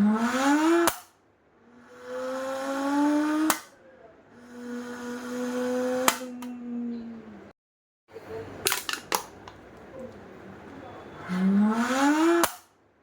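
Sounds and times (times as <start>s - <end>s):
imitated car engine buzzing: 0.0s - 7.5s, 11.2s - 12.7s.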